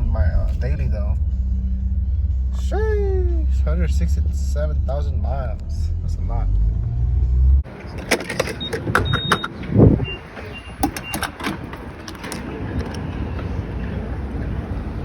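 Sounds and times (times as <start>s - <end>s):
low thump: 0.0s - 5.9s
car low rumble: 0.0s - 15.0s
sharp clicks and knocks: 10.8s - 13.1s.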